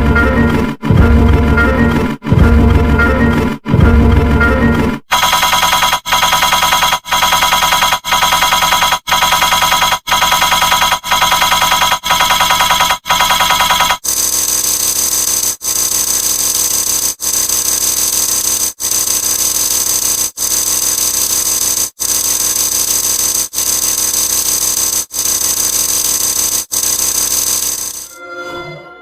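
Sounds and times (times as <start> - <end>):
harsh electric buzzing: 5.1 - 28.1.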